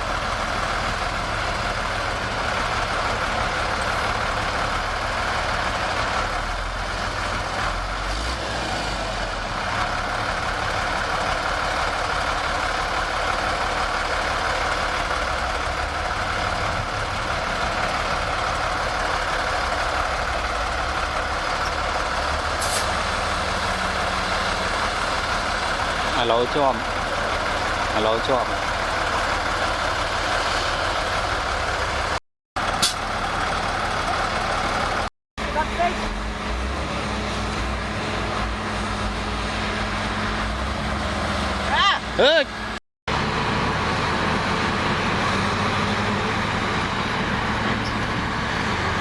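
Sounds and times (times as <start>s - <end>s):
heavy diesel engine running: 0.0s - 49.0s.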